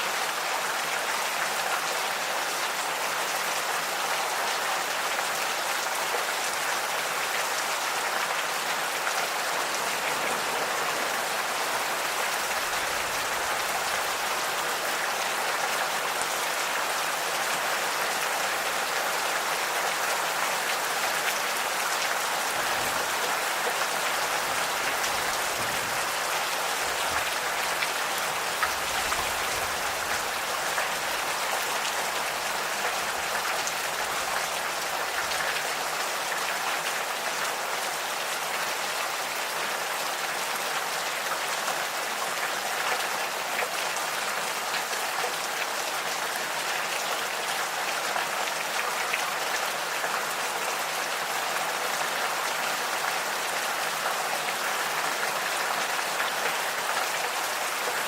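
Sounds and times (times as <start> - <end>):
gentle rain falling: 0.0 - 58.0.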